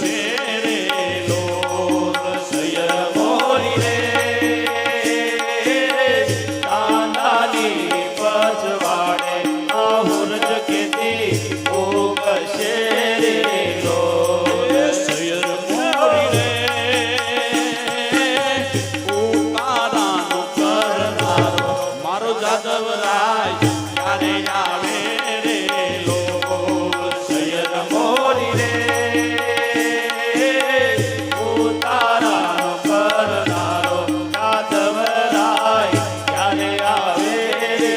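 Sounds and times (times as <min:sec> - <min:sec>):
devotional singing: 0:00.0 - 0:37.9
tabla-like percussion: 0:00.0 - 0:37.9.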